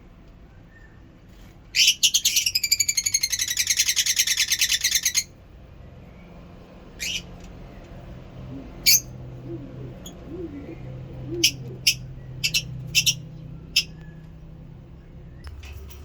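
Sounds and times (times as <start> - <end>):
lovebird chattering trill: 1.8 - 5.3, 8.8 - 9.1, 11.3 - 13.2.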